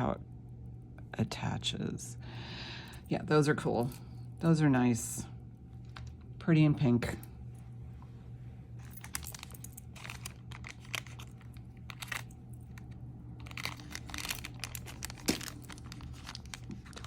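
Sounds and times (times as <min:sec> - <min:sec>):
low steady hum: 0:00.0 - 0:17.0
wrappings crinkling: 0:08.8 - 0:17.0.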